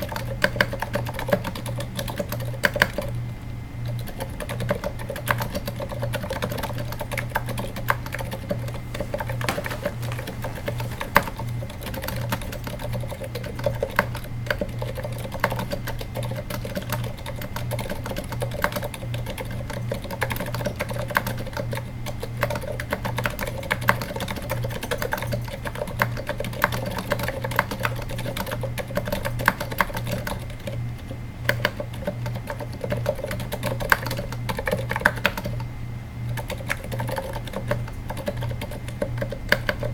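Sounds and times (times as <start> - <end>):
quiet keyboard typing: 0.0 - 35.7, 36.3 - 39.9
steady low hum: 0.0 - 39.9.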